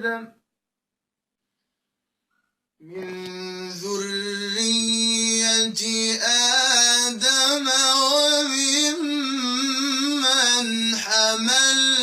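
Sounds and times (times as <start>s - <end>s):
man reciting melodically: 0.0s - 0.5s, 2.8s - 12.0s.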